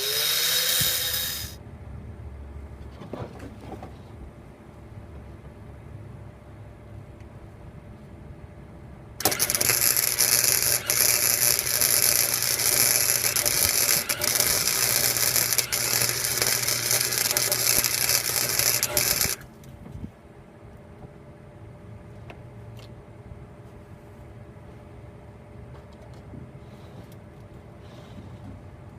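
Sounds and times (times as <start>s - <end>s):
welder crackling: 0.0s - 1.6s, 9.2s - 19.5s.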